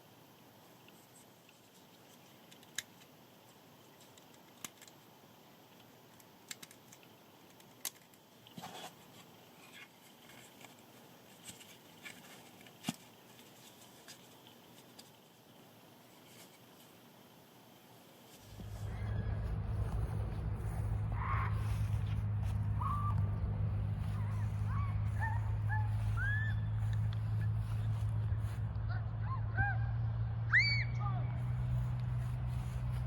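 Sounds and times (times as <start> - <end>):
low steady hiss: 0.0 - 24.7.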